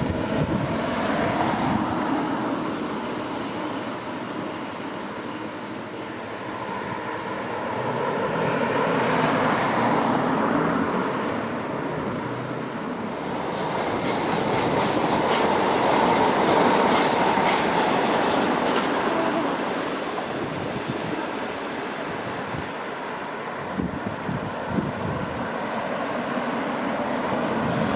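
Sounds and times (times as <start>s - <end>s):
train rumbling: 0.0s - 27.9s
wheels clicking over rail joints: 13.0s - 23.0s.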